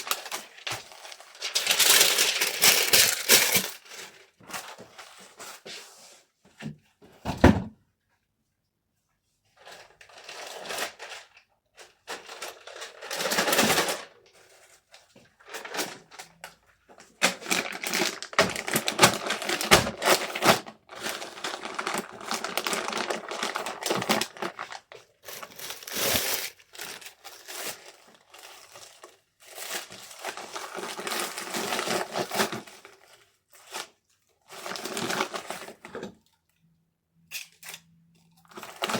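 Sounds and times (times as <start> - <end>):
packing materials rustling: 0.0 - 5.6, 15.4 - 16.4, 17.0 - 35.9.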